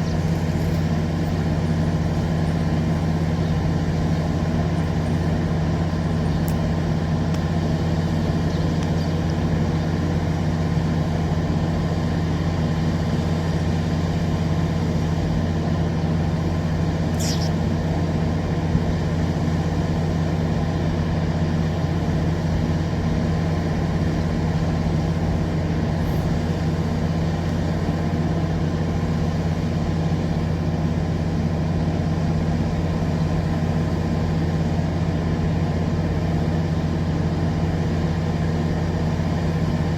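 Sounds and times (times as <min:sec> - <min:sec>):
diesel engine idling: 0:00.0 - 0:39.9
short high chirp: 0:17.1 - 0:17.6.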